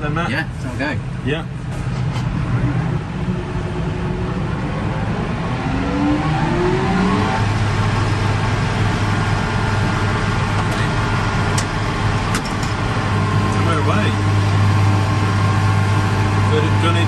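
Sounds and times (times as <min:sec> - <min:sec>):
mower whining up to speed: 0:01.9 - 0:17.0
tractor engine running: 0:07.5 - 0:17.0.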